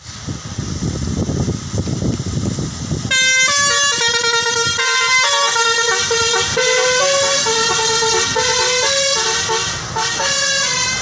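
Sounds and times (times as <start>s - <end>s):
bus multi-tone horn melody: 3.1s - 11.0s.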